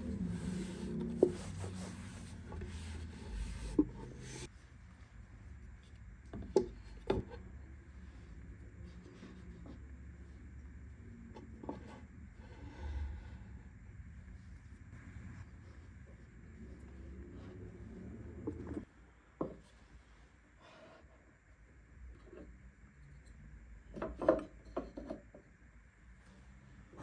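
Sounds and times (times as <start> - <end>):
rubbing and handling noises: 0.0 - 5.8.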